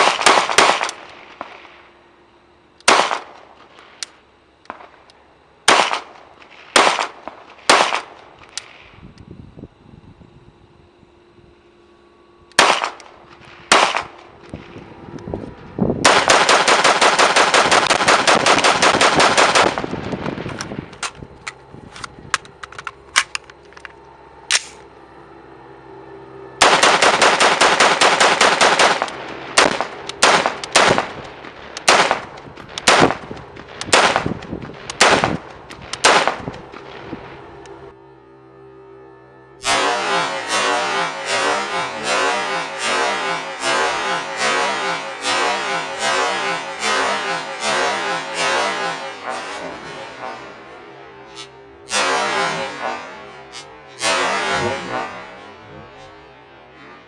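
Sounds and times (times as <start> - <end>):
rifle firing: 0.0 - 1.5, 2.9 - 3.4, 5.7 - 8.2, 12.6 - 13.1, 13.7 - 14.2, 16.0 - 19.9, 26.6 - 36.6.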